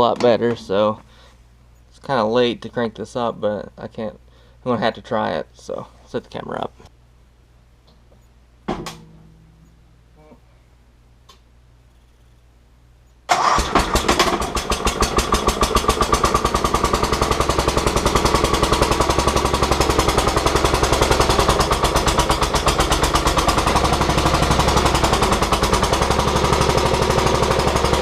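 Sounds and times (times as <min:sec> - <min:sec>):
backhoe engine starting and running: 0:13.3 - 0:28.0.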